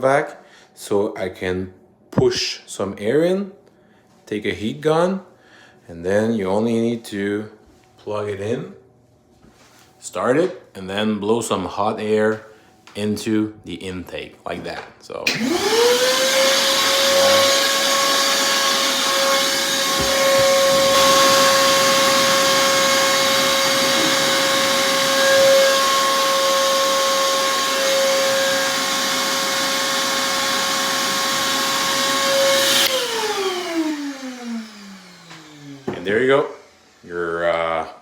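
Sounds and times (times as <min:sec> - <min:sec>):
motor winding down: 0:15.3 - 0:36.0
shop vac motor whine: 0:15.3 - 0:37.8.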